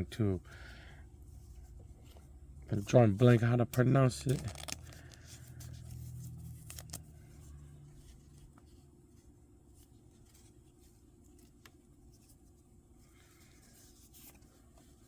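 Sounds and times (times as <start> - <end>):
trading cards clicking and rustling: 2.8 - 7.3.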